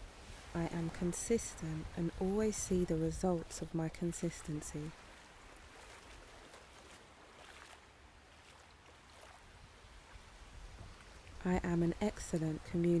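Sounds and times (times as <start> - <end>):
flowing water: 0.0 - 13.0.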